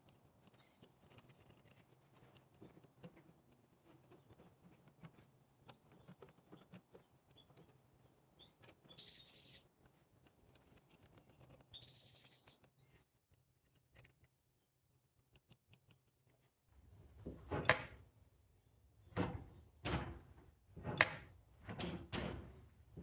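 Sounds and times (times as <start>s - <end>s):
faint clicks and taps: 15.1s - 18.0s.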